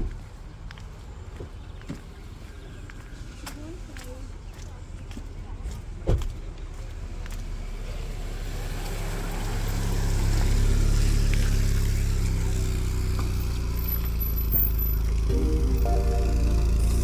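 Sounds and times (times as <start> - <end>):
road noise: 6.9 - 17.0
vehicle engine running: 9.9 - 17.0.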